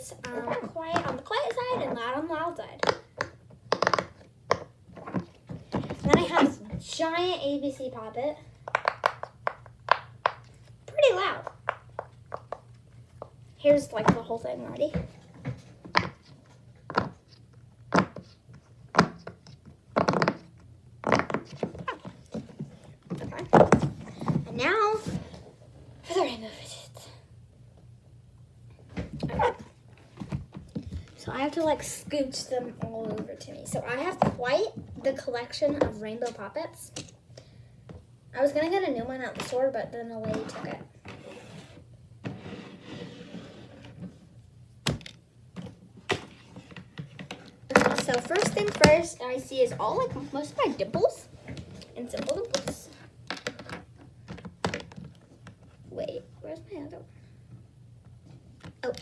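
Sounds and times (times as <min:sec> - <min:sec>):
plastic toys rustling: 0:45.6 - 0:55.7.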